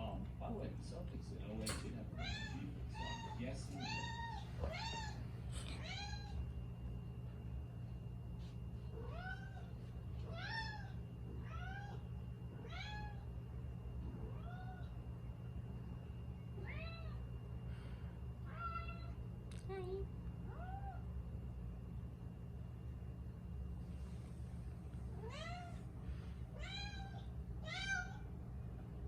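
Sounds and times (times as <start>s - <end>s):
cat meowing: 2.2s - 5.2s, 12.6s - 13.2s, 14.2s - 14.9s, 26.6s - 28.2s.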